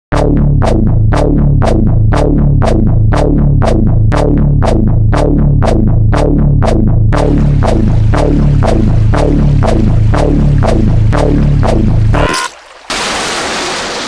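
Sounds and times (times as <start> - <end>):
steady low hum: 6.7 - 12.2.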